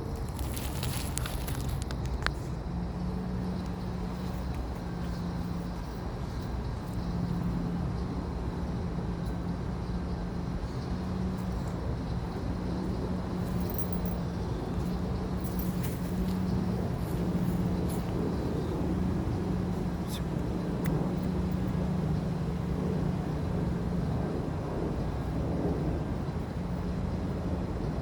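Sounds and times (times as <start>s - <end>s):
constant hum: 0.0s - 28.0s
low mechanical rumble: 0.0s - 28.0s.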